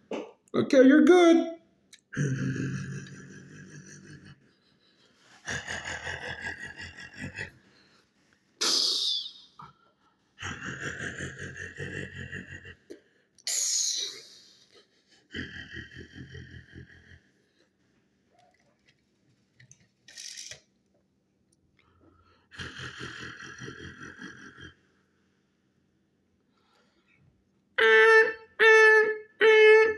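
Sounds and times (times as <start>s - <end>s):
person imitating truck engine: 27.8s - 29.9s.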